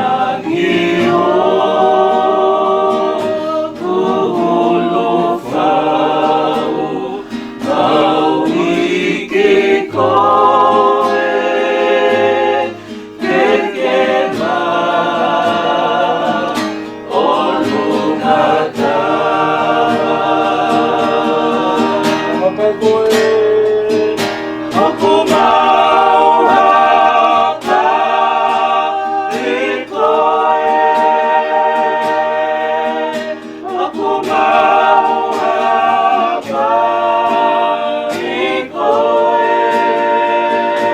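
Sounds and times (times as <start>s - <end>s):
choir singing a hymn: 0.0s - 40.9s
low instrumental backing: 22.3s - 28.7s.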